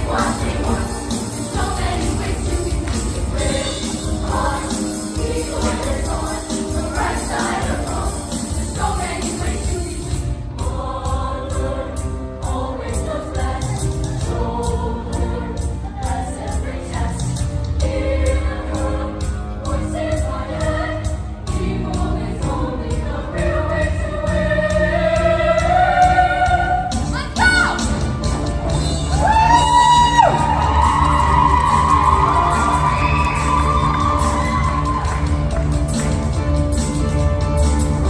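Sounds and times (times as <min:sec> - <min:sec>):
choir singing: 0:00.0 - 0:27.2.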